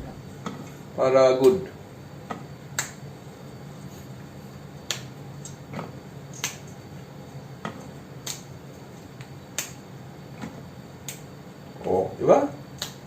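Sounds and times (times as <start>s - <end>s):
green beans snapping: 8.2s - 8.5s, 12.8s - 13.0s.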